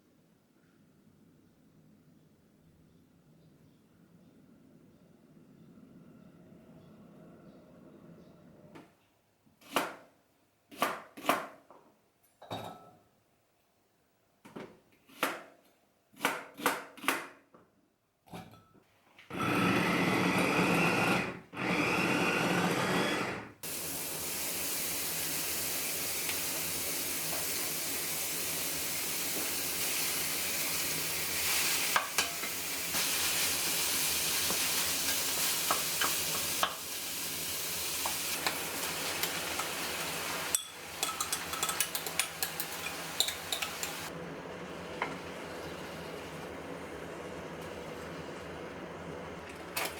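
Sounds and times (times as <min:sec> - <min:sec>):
kitchen motor running: 0:19.3 - 0:49.9
food sizzling in a pan: 0:23.6 - 0:49.4
stirring taps: 0:31.9 - 0:33.4, 0:34.2 - 0:49.8.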